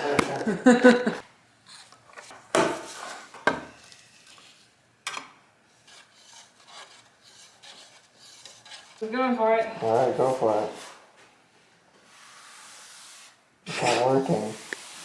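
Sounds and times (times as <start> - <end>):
scraping and rubbing: 5.8 - 11.1, 12.0 - 15.0.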